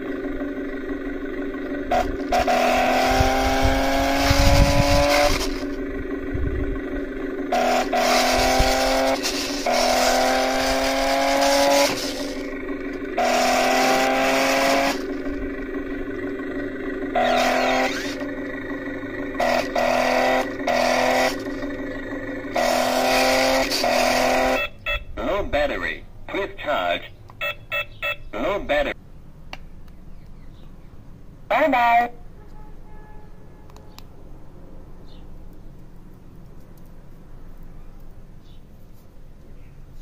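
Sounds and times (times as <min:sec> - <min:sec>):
toy car motors whining: 0:01.6 - 0:06.5, 0:07.4 - 0:21.8, 0:22.4 - 0:25.0.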